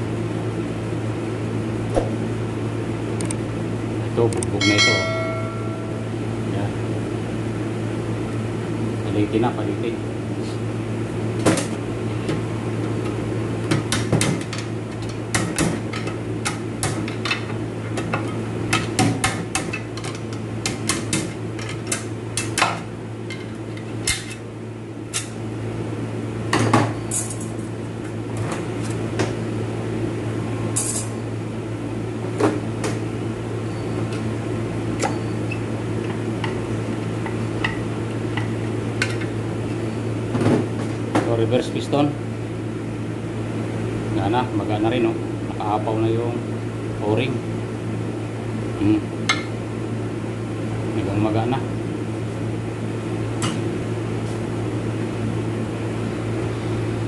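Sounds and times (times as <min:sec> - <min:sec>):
steady low hum: 0:00.0 - 0:57.0.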